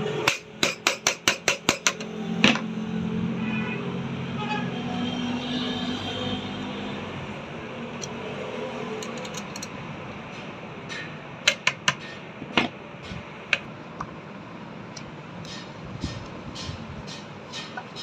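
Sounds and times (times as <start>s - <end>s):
sharp taps on metal plate: 10.8s - 12.8s, 15.4s - 18.0s.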